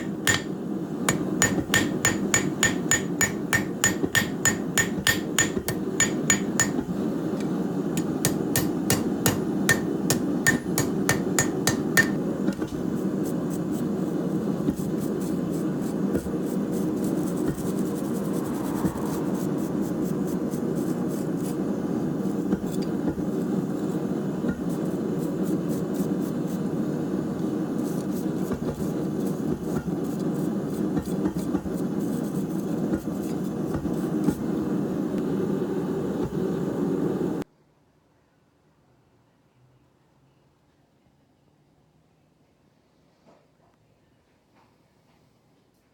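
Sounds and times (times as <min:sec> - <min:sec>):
hammer striking steel on anvil: 0:00.0 - 0:06.9, 0:08.0 - 0:12.2.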